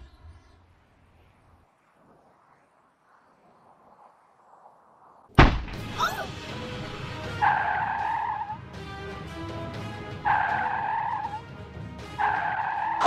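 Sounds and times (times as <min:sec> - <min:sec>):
music: 0:05.7 - 0:13.0.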